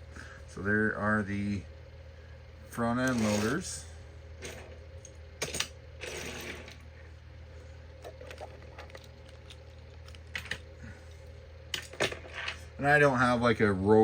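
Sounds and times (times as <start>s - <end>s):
steady low hum: 0.0s - 14.0s
toy car scraping slide: 3.1s - 3.6s.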